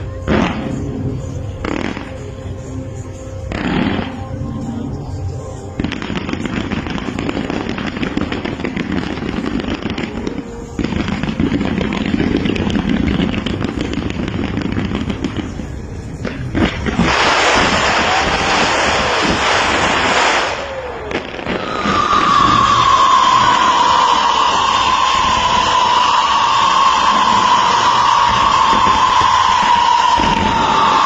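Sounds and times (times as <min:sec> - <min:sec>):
firework bangs: 0:00.0 - 0:02.3, 0:03.4 - 0:04.3, 0:05.8 - 0:31.0
fireworks crackling and popping: 0:00.0 - 0:31.0
crackling hiss: 0:05.6 - 0:31.0.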